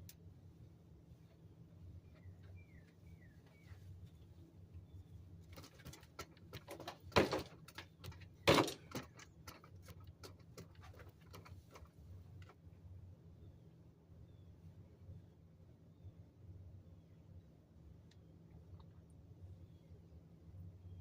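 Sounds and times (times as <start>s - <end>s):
bucket rustling and clicking: 5.5s - 12.0s
bucket knocks: 6.7s - 7.6s.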